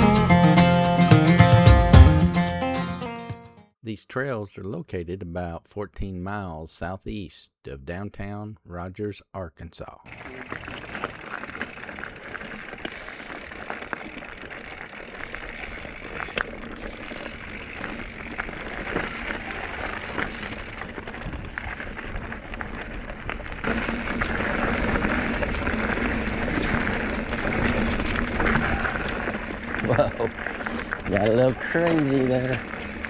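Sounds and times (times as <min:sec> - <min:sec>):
bike clicks and rattles: 0:10.1 - 0:33.0
bike tyres on dirt trail: 0:10.1 - 0:33.0.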